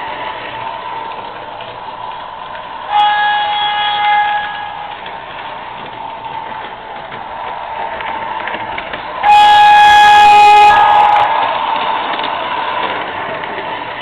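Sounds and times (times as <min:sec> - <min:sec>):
model streetcar running on track: 0:00.0 - 0:14.0
horn-like warning tone: 0:02.9 - 0:04.9, 0:09.2 - 0:11.3.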